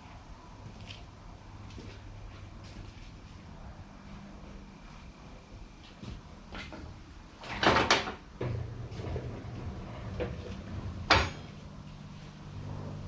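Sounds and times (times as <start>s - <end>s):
steady low hum: 0.0s - 13.0s
sharp metallic clank: 11.1s - 11.6s.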